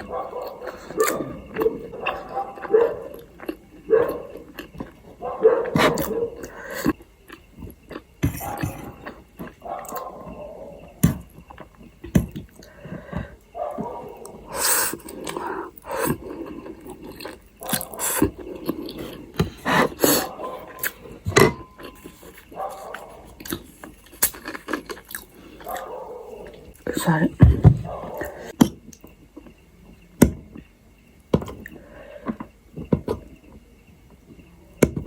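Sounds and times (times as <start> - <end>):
person chewing food: 0.0 - 30.7, 31.3 - 33.6.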